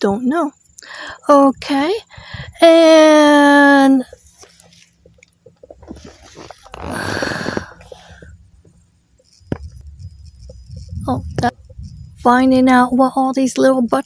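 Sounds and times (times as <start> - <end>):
short breathy rush: 5.9 - 8.4.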